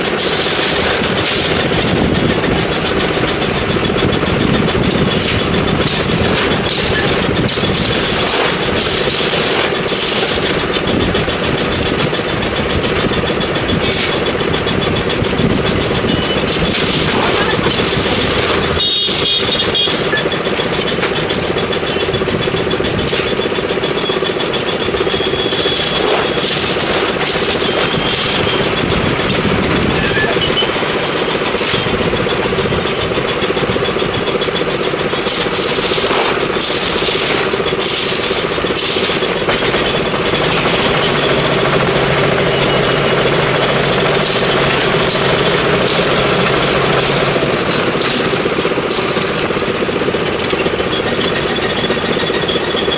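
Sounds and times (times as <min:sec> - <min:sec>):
engine running steadily: 0:00.0 - 0:52.9
sharp knocks: 0:22.9 - 0:23.7.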